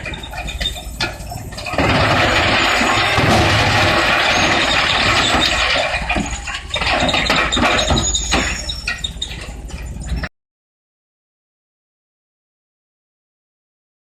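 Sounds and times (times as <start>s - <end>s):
wood chipper rumbling: 0.0s - 10.2s.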